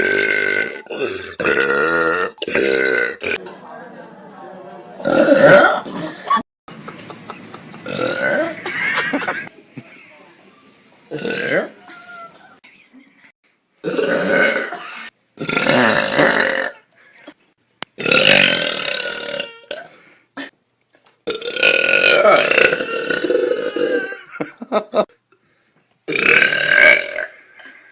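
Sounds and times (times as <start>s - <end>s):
girl burping loudly: 0.0s - 3.4s, 5.0s - 6.2s, 7.8s - 9.3s, 11.1s - 11.8s, 13.8s - 16.9s, 18.0s - 20.5s, 21.3s - 24.3s, 26.1s - 27.7s.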